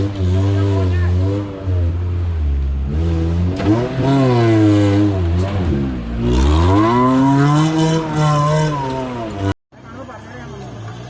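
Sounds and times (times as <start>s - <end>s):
engine revving hard: 2.8s - 9.5s.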